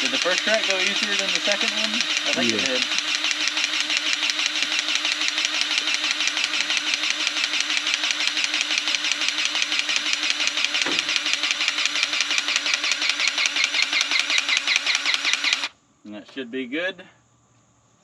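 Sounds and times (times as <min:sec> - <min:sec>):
diesel engine idling: 0:00.0 - 0:07.4.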